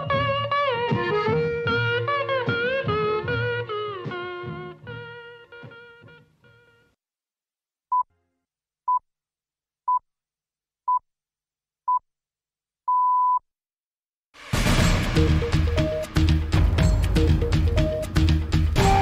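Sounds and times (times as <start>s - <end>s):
programme theme music: 14.4s - 19.0s.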